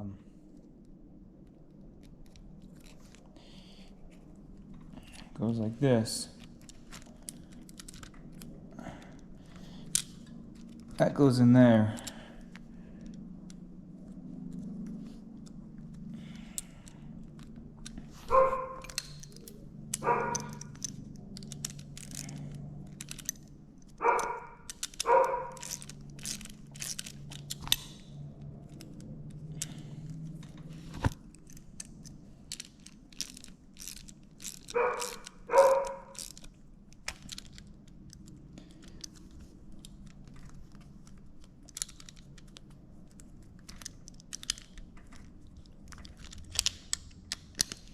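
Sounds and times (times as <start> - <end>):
dog barking: 18.3 - 18.9, 20.0 - 20.6, 24.0 - 25.6, 34.7 - 36.2.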